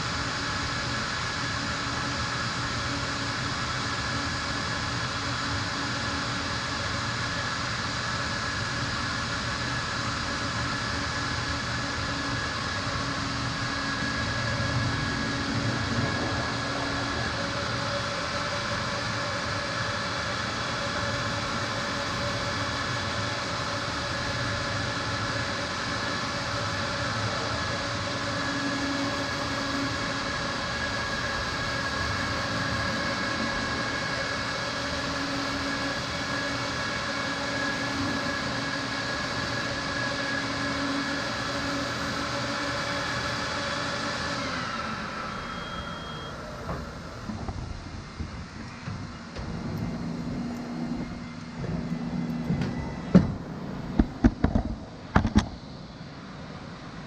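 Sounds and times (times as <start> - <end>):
rug cleaning machine humming: 11.6 - 57.0.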